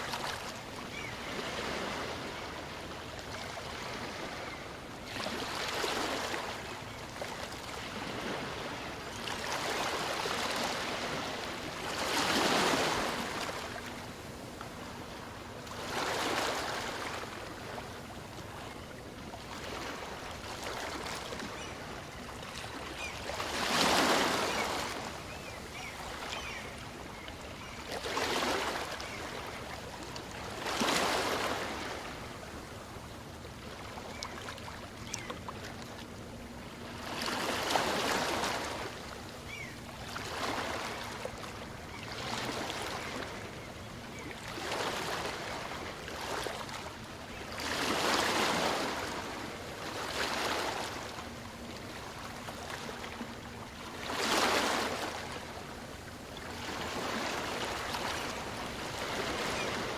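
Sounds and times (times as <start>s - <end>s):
waves washing up a beach: 0.0s - 2.9s, 22.6s - 27.2s.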